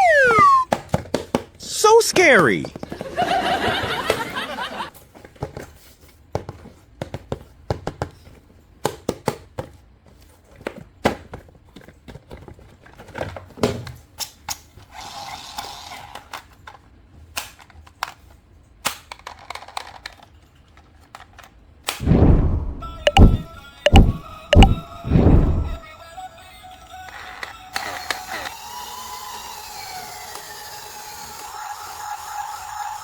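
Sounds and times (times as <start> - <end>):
plastic toys clicking and knocking: 16.1 - 21.6.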